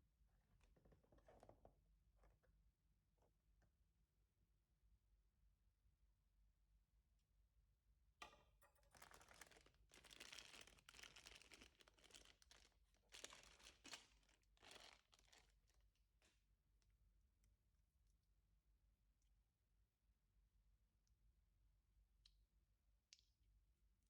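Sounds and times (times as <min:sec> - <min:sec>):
packaging crinkling and rustling: 0:08.9 - 0:15.8.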